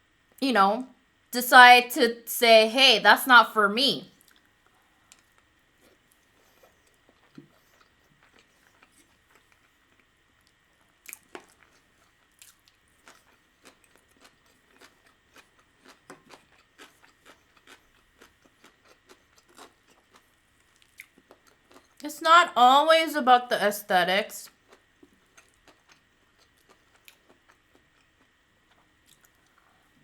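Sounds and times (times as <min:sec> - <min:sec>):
person chewing with wet clicks: 0:04.2 - 0:22.0, 0:24.5 - 0:30.0.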